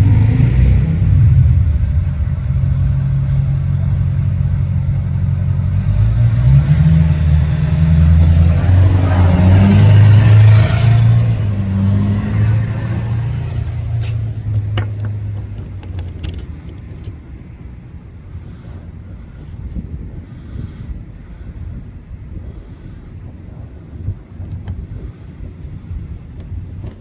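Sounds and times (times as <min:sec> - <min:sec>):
vehicle driving past: 0:00.0 - 0:15.8.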